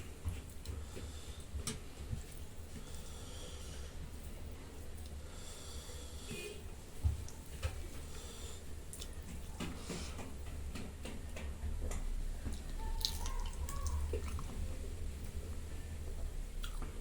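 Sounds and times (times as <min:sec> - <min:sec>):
steady low hum: 0:00.0 - 0:17.0
chewing clicks and smacks: 0:16.6 - 0:17.0.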